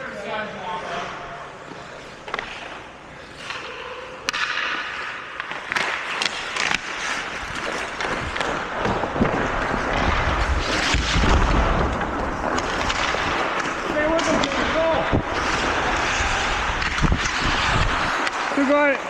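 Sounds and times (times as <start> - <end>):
hockey sticks and puck clacking: 1.6 - 19.0
skate blades scraping on ice: 4.3 - 19.0.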